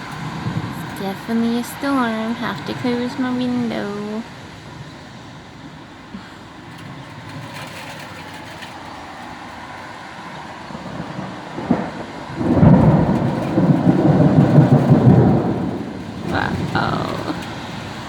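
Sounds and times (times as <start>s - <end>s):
low rolling thunder: 0.0s - 18.0s
steady rain hiss: 0.0s - 18.0s.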